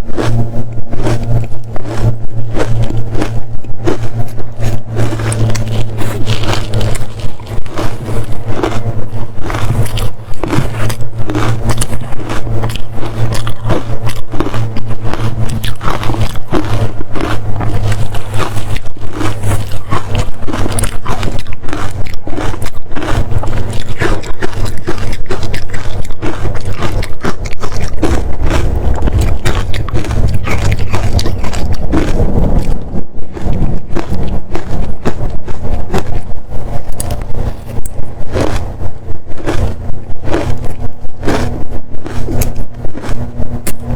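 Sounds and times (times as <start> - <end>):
crunching frozen ice: 0.0 - 43.9.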